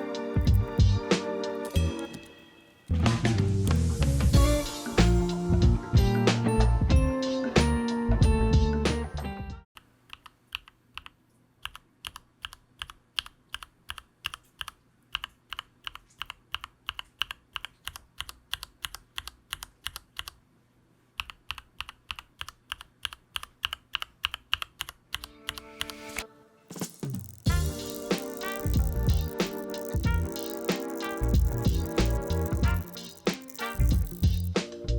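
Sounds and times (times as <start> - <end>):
mechanical keyboard typing clicks: 26.8 - 34.6.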